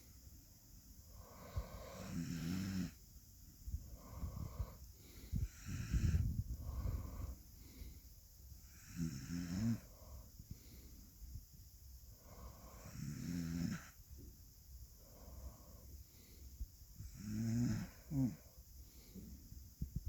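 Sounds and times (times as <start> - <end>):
dog snoring: 1.2 - 3.0, 4.0 - 7.8, 8.6 - 10.2, 12.2 - 14.0, 17.0 - 18.4.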